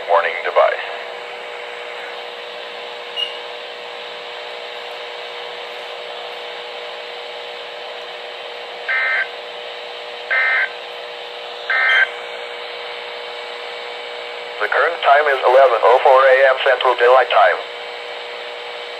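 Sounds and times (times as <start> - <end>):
faint hum: 0.0 - 18.9
buzzy digital data tones: 8.9 - 9.3, 10.3 - 10.7, 11.7 - 12.2.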